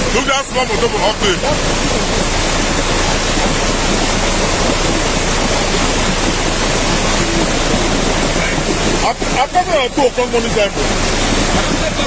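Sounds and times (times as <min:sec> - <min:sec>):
water rushing: 0:00.0 - 0:12.0.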